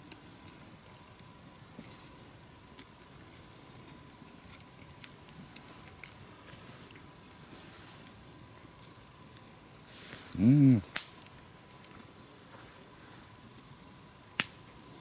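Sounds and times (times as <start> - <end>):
person chewing food: 3.8 - 7.1
faint hiss: 5.1 - 15.0.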